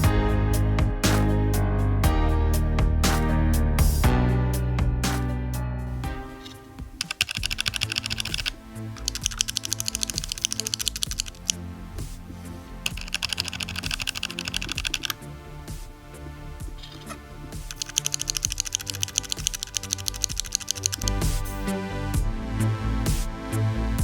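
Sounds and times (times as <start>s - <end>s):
background music: 0.0s - 24.0s
mechanical keyboard typing: 7.0s - 11.6s, 12.9s - 15.2s, 16.8s - 21.3s.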